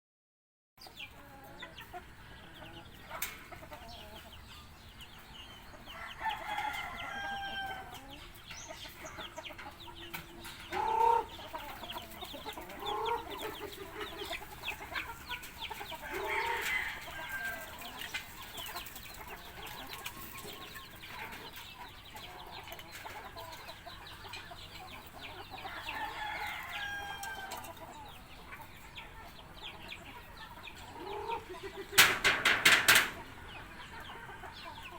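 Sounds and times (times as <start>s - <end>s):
chickens clucking: 0.8s - 34.9s
rooster crowing: 5.8s - 8.0s, 16.0s - 17.9s, 25.6s - 27.7s.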